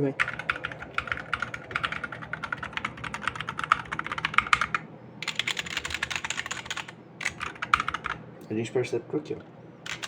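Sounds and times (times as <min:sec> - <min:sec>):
rapid keyboard typing: 0:00.2 - 0:08.2.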